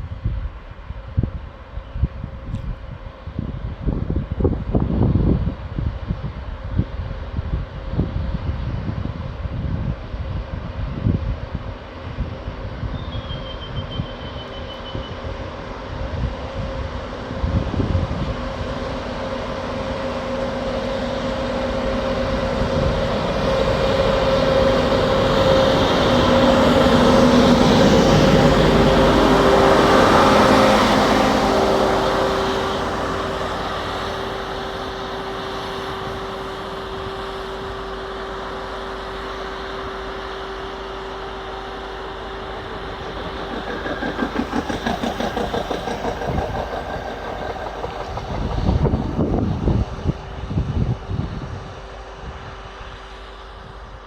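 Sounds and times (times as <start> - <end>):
wind buffeting microphone: 0.0 - 14.3, 14.9 - 40.5, 41.1 - 54.0
rail machine engine drone: 0.0 - 54.0.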